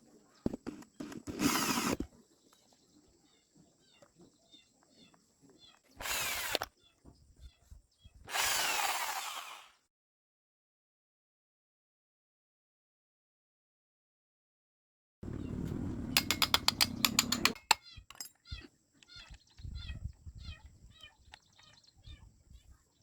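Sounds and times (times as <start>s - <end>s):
power tool running: 6.0s - 6.7s, 8.3s - 9.7s, 15.2s - 17.6s.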